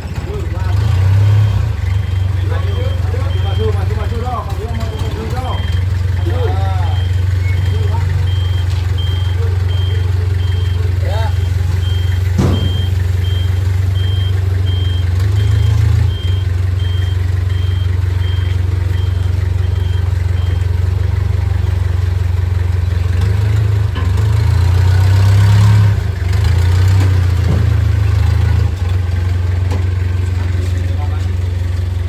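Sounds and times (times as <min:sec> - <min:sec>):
vehicle engine rumbling: 0:00.0 - 0:32.0
high electronic beeps: 0:01.4 - 0:20.7.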